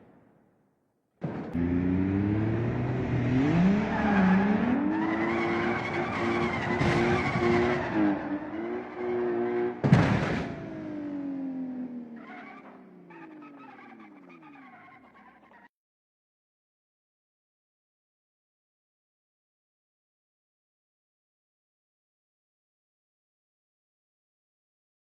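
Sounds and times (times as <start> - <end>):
racing car engine revving: 1.5 - 15.6
tyre screech: 3.8 - 9.2, 12.2 - 15.7.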